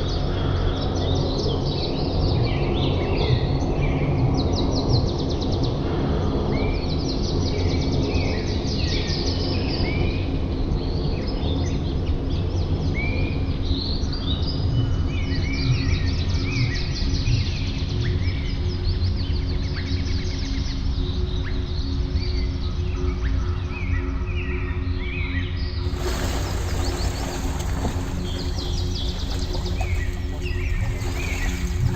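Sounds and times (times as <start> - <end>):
low rumbling noise: 25.8 - 31.9
small birds chirping and trilling: 25.8 - 31.9.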